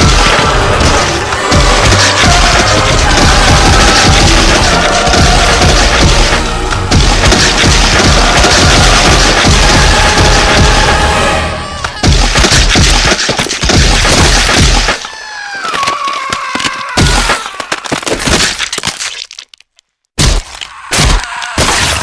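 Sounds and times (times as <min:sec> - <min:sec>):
crashing and breaking impacts: 0:00.0 - 0:10.9.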